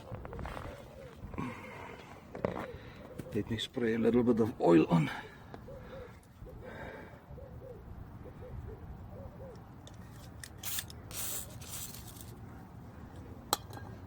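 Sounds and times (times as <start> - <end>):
faint hooting calls: 0.0 - 3.6, 5.2 - 9.7
aerosol can spraying: 10.6 - 12.2.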